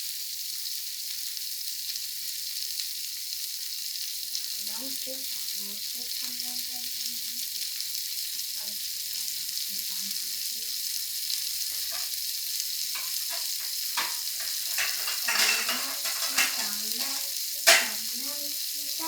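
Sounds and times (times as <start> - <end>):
shrimp sizzling in hot oil: 0.0 - 19.0
stirring scrapes and knocks: 11.6 - 12.2, 12.9 - 18.1.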